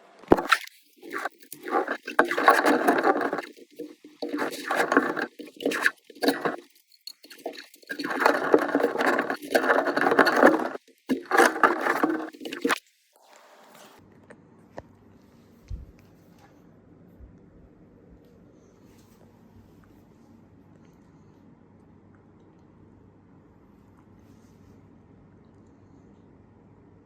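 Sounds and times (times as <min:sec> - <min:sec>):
scraping: 0:00.3 - 0:12.8.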